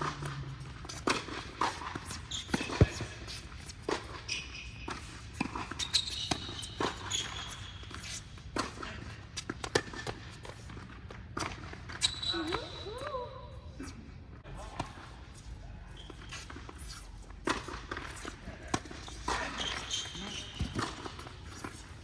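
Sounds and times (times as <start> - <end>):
tennis balls struck and bouncing: 0.0 - 7.7, 17.4 - 21.9.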